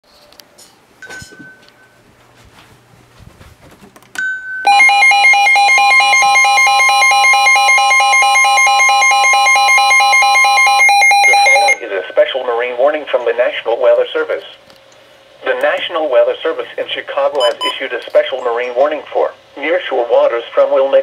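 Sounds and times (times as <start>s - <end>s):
short beeps: 4.7s - 11.8s, 17.4s - 17.8s
warbling electronic alarm: 4.7s - 12.2s.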